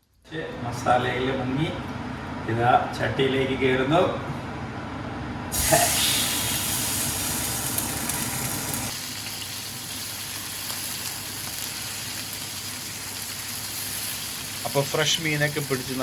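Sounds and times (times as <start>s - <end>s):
fish sizzling in a pan: 5.5s - 16.0s.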